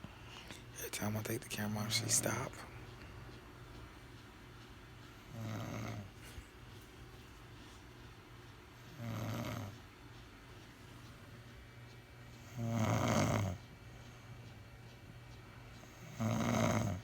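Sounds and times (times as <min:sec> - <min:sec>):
woman snoring: 0:09.0 - 0:09.7, 0:12.6 - 0:13.6, 0:16.0 - 0:17.0.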